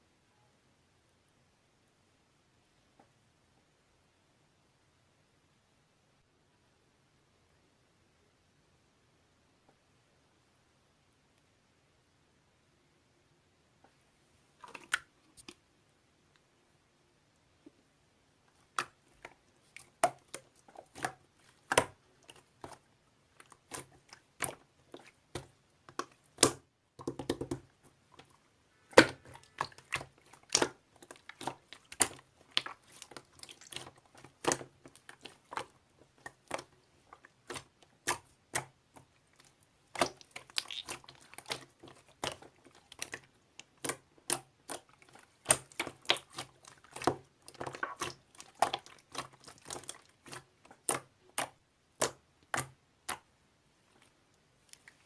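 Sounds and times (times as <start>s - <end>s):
slime squished clicking and popping: 28.9s - 53.3s.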